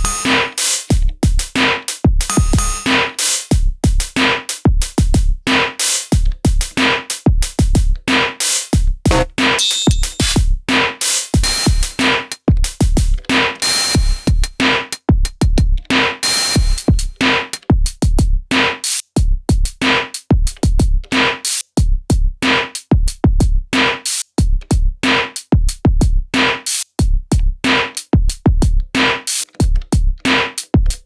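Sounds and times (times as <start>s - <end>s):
deep kick drums: 0.0s - 0.3s, 2.1s - 4.1s, 8.8s - 9.3s, 21.8s - 23.6s, 25.6s - 26.2s, 27.0s - 27.6s, 28.2s - 28.9s
pitched percussion blips: 0.0s - 0.5s, 2.3s - 3.0s, 9.1s - 10.4s
snare and hi-hat hits: 0.0s - 31.0s.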